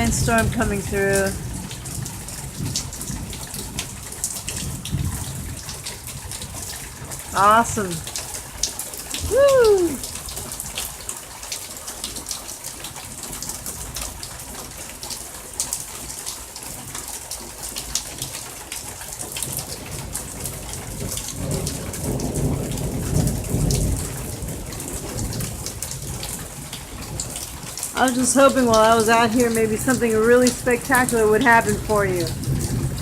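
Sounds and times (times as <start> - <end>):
heavy rain falling: 0.0 - 33.0
raindrops ticking: 0.0 - 33.0
low thunder roll: 9.1 - 10.0, 20.9 - 27.4, 28.5 - 33.0.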